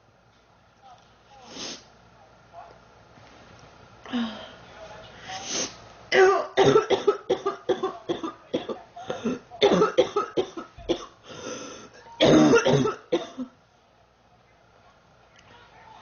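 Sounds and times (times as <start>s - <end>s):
girl coughing: 6.1s - 11.2s, 12.2s - 13.5s.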